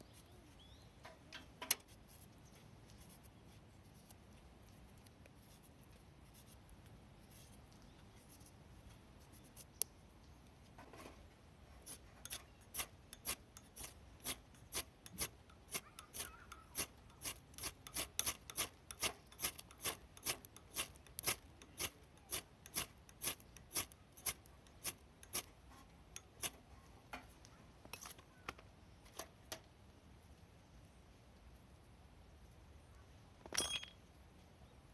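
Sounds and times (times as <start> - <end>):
knife scraping strokes: 11.8 - 25.5.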